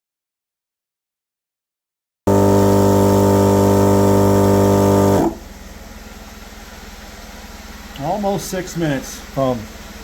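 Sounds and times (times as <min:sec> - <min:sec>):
air compressor humming: 0:02.3 - 0:10.0.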